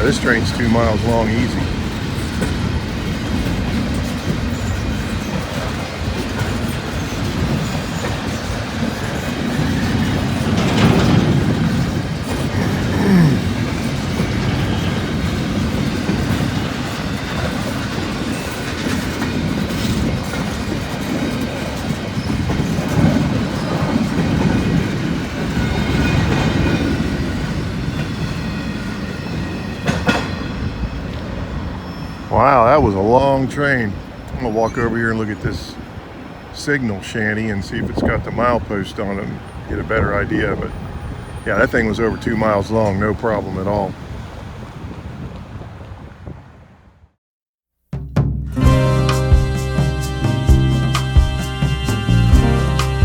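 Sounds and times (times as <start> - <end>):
freight train wheels on rails: 0.0 - 46.9
short falling squeal: 29.2 - 32.4.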